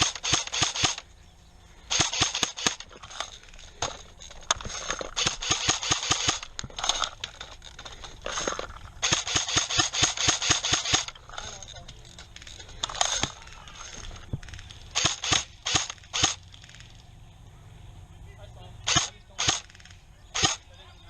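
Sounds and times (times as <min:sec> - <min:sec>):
airsoft rifle firing bursts: 0:00.0 - 0:01.1, 0:01.9 - 0:11.5, 0:12.8 - 0:16.8, 0:18.8 - 0:20.7.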